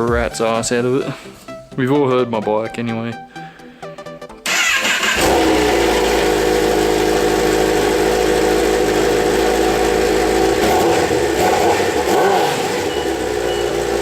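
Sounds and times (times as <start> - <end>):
motorcycle engine starting and idling: 4.4 - 14.0.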